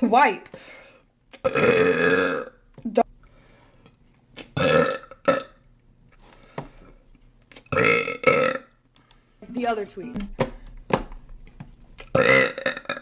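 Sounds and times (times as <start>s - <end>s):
woman burping loudly: 1.4s - 2.6s, 4.6s - 5.6s, 7.7s - 8.7s, 12.1s - 13.0s.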